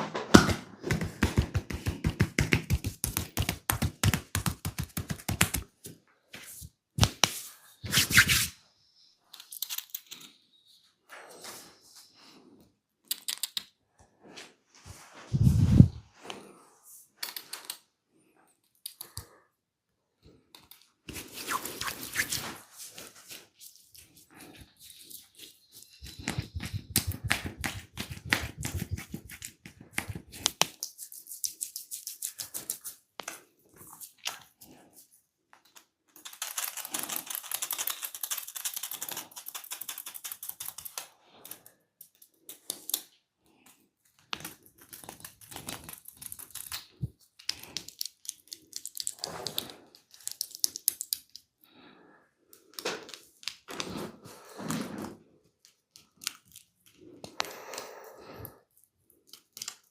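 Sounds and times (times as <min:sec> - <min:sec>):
hands tapping and slapping skin: 0:00.8 - 0:05.7
fast rubbing and patting: 0:00.8 - 0:05.8, 0:06.4 - 0:08.5, 0:21.1 - 0:33.0.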